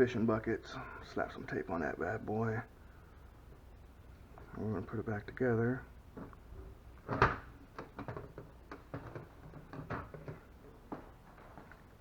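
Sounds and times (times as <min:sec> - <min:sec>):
hard plastic parts knocking: 0:07.1 - 0:11.1.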